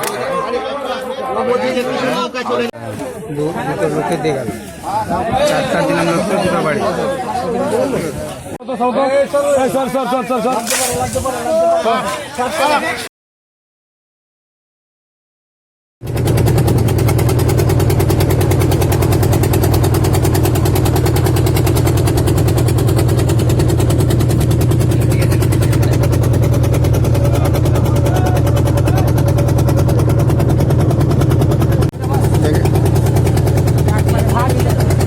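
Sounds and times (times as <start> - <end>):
engine running at fast beat: 16.0 - 35.0.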